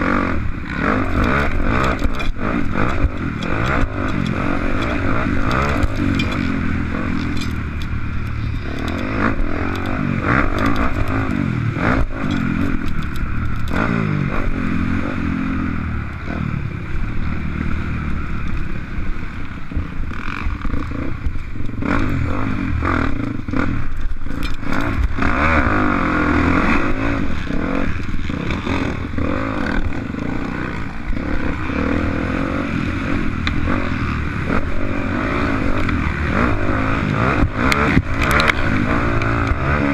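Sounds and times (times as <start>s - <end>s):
motocross bike engine revving: 0.0s - 39.9s
clattering and scraping: 1.2s - 11.4s.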